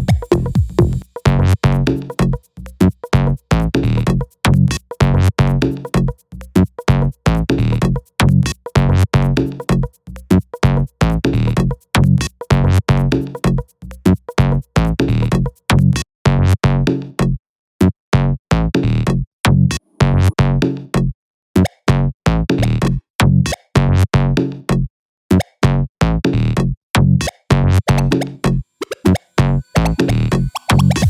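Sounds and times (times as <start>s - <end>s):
techno house club beat: 0.0s - 8.0s, 12.4s - 13.6s, 27.9s - 29.1s, 29.7s - 31.0s.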